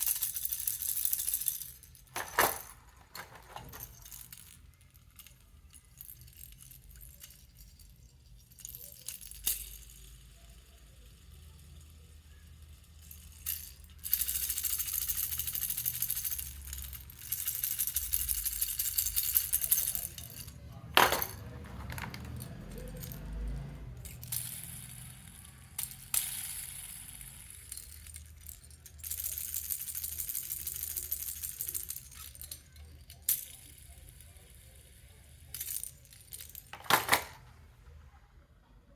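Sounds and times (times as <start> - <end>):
baby toy rattle shaken: 0.0 - 23.4, 24.0 - 37.4.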